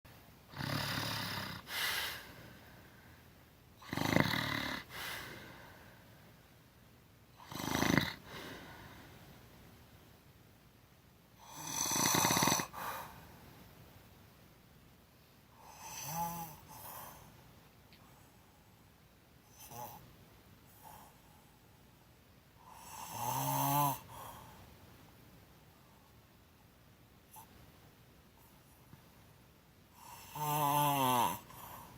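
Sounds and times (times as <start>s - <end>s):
woman snoring: 0.5s - 2.2s, 3.8s - 5.4s, 7.4s - 8.8s, 11.4s - 13.0s, 15.6s - 16.9s, 22.7s - 24.2s, 30.0s - 31.9s.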